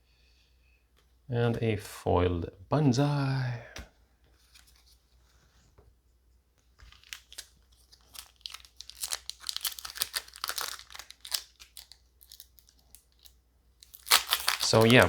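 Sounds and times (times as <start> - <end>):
foil wrapper crinkling and tearing: 6.9 - 15.0.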